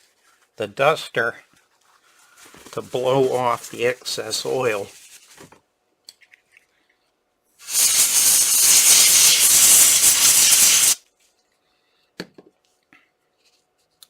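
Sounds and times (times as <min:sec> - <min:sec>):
canned air duster hissing: 0:07.6 - 0:11.0.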